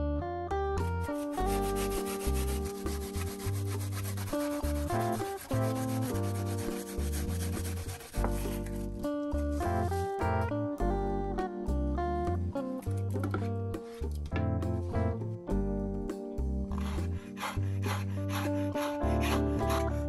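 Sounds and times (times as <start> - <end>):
guitar music with bass: 0.0 - 20.0
scratchy rasping noise: 1.1 - 10.0, 16.7 - 20.0.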